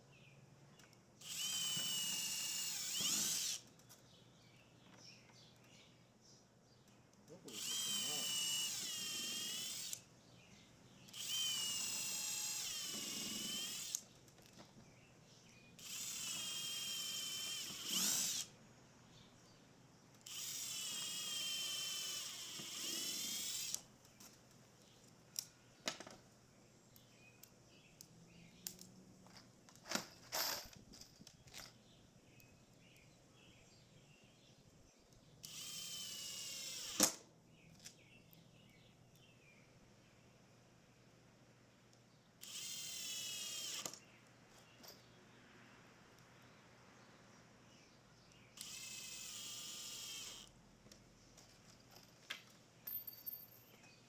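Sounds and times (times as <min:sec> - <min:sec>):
power drill whining: 0:01.2 - 0:03.7, 0:07.5 - 0:10.0, 0:11.1 - 0:14.0, 0:15.8 - 0:18.6, 0:20.2 - 0:23.8, 0:35.4 - 0:37.2, 0:42.4 - 0:44.0, 0:48.6 - 0:50.5.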